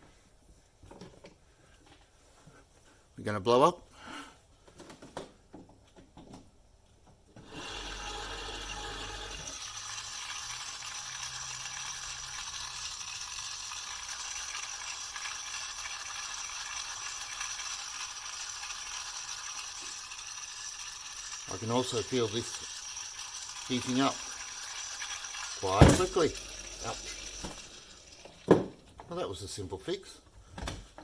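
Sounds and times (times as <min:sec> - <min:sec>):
small stirring motor running: 0:07.4 - 0:28.9.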